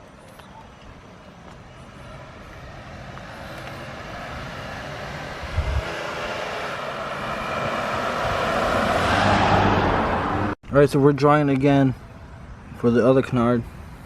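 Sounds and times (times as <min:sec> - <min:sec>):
road vehicle passing: 0:01.6 - 0:10.6.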